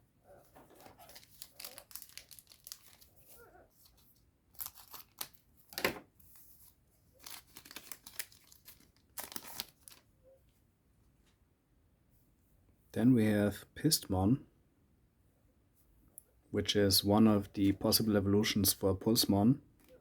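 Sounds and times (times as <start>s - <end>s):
foil wrapper tearing and crinkling: 0.7s - 5.8s, 7.2s - 10.1s.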